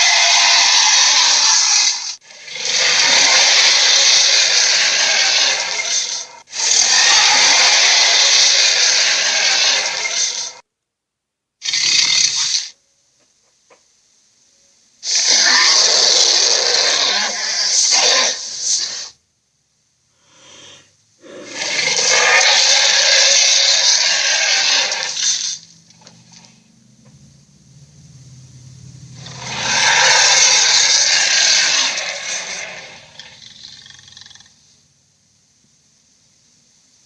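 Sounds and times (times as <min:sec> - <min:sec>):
gorilla roars: 0:00.0 - 0:10.6, 0:15.1 - 0:19.1, 0:20.3 - 0:26.5, 0:29.1 - 0:34.6
faint low rumble: 0:25.6 - 0:29.8.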